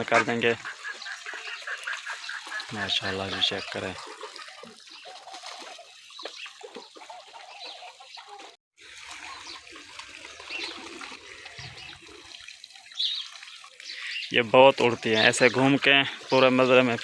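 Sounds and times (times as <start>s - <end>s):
ducks calling: 0.0s - 4.5s
water splashing into pool: 0.0s - 17.0s.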